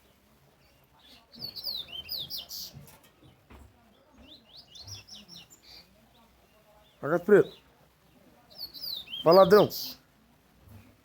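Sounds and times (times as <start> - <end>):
bird singing whistled notes: 0.6 - 2.8, 8.5 - 10.0.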